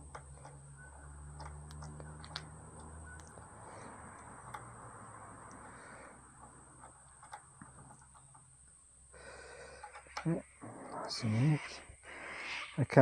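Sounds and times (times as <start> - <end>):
clicks of small metal parts: 0.0 - 3.5
low steady hiss: 0.0 - 13.0.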